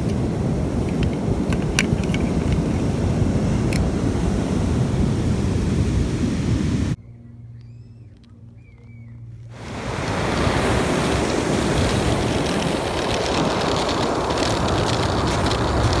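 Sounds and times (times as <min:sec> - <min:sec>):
wind rushing over microphone: 0:00.0 - 0:07.0, 0:09.5 - 0:16.0
surf: 0:09.6 - 0:16.0
faint clicks: 0:09.7 - 0:16.0.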